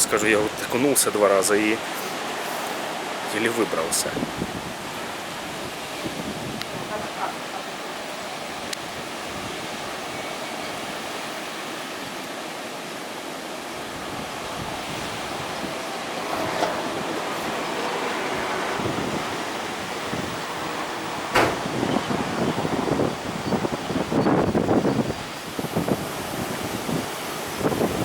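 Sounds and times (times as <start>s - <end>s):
surf breaking on shore: 0.0s - 28.0s
wind buffeting microphone: 3.8s - 11.2s, 13.6s - 28.0s.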